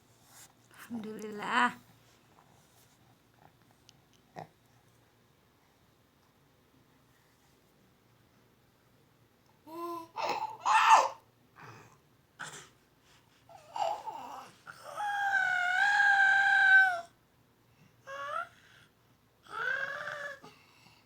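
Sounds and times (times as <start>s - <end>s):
baby crying: 9.7s - 11.2s, 13.6s - 17.1s, 19.5s - 20.5s.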